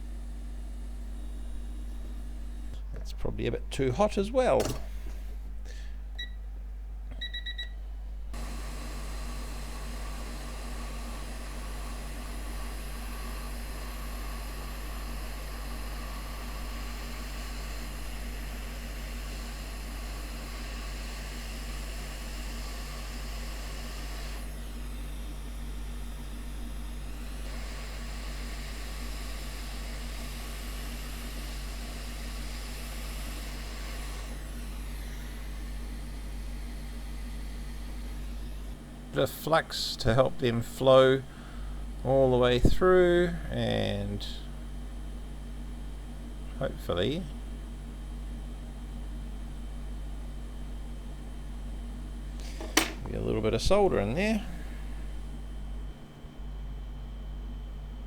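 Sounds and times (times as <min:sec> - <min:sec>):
hot air blower hissing: 0:00.0 - 0:02.8, 0:08.3 - 0:44.8, 0:49.8 - 0:56.3
short electronic beeps: 0:07.2 - 0:07.8.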